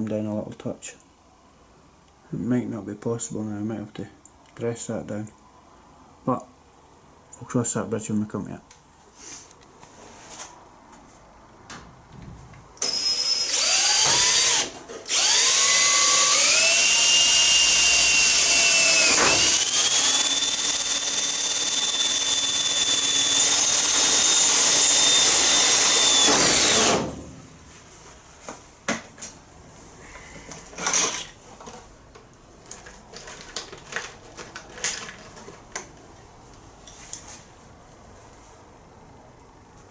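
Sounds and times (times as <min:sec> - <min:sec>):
power drill driving screws: 0:12.8 - 0:27.1.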